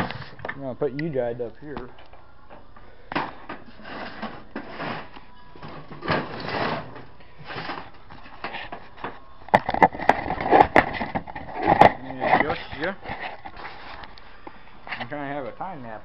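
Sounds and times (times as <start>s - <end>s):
scraping and rustling of tools: 1.9s - 14.2s.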